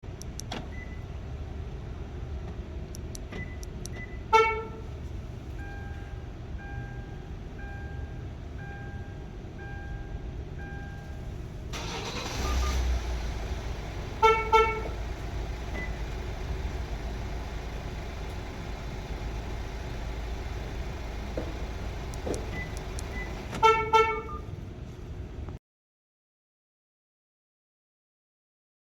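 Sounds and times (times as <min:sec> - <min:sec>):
car engine idling: 0:00.1 - 0:25.5
car horn chirps: 0:04.1 - 0:05.0, 0:11.8 - 0:13.0, 0:14.0 - 0:15.1, 0:22.6 - 0:24.6.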